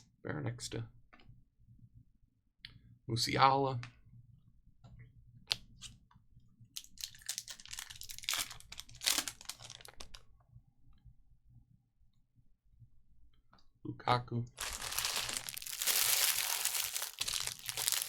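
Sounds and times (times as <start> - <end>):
card pack wrapper crinkling: 6.8 - 10.2, 14.6 - 18.0.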